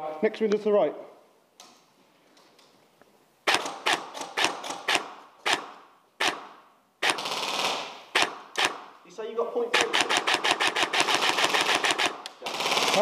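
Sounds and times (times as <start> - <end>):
airsoft guns firing: 3.4 - 9.0, 9.7 - 13.0.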